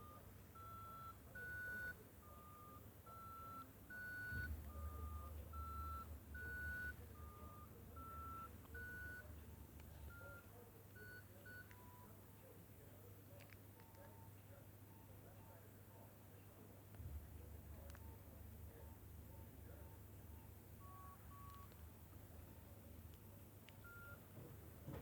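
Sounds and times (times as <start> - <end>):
beeping phone ringtone: 0.0 - 9.3, 20.8 - 21.7.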